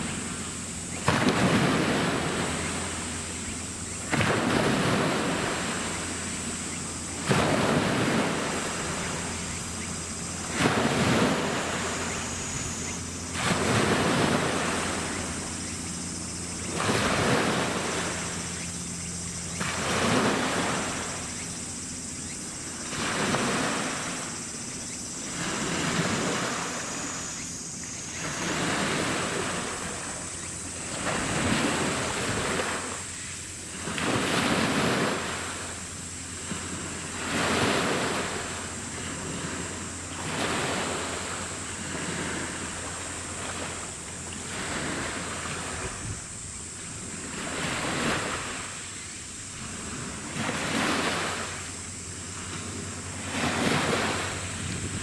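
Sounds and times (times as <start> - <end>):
steady low hum: 0.0 - 55.0
waves washing against shore: 0.0 - 55.0.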